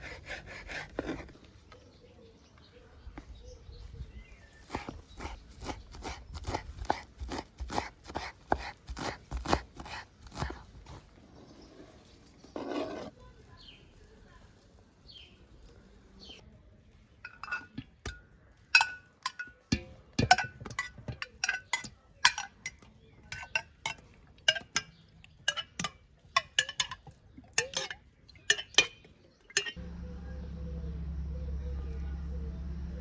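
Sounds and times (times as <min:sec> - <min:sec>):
utensil clinking against dish: 0:18.8 - 0:29.8
steady low hum: 0:29.8 - 0:33.0.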